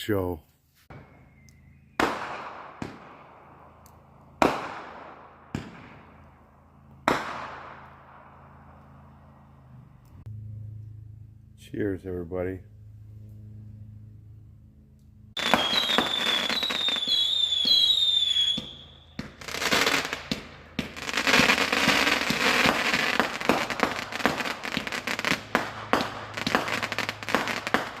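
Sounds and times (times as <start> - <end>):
whistling firework shrieking: 0.9 - 2.4, 15.4 - 20.2
fireworks crackling and popping: 0.9 - 3.2, 4.4 - 6.3, 7.0 - 8.0, 15.4 - 28.0.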